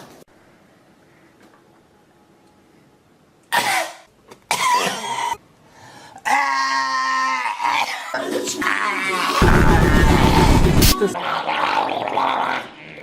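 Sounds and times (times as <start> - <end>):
person coughing: 3.5 - 5.4.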